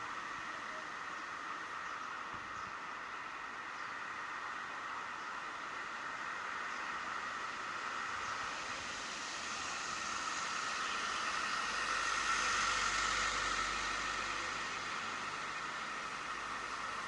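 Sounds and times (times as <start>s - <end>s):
passing vehicles hiss: 0.0s - 17.0s
vehicle rumbling by: 7.0s - 17.0s.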